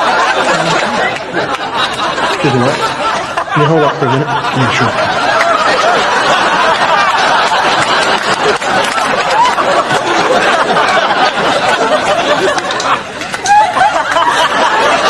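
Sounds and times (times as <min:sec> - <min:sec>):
crowd babble: 0:00.0 - 0:15.0.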